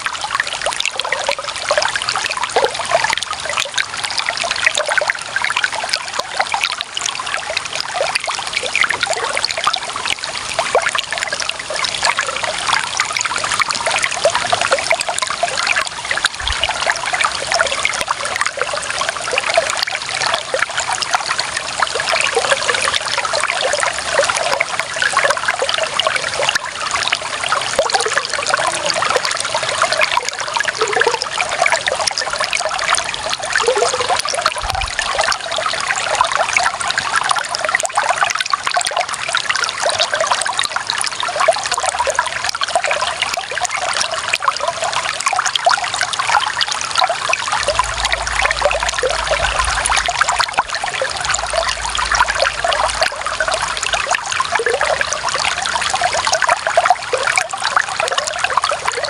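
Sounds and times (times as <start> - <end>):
water trickling and splashing: 0.0 - 59.0.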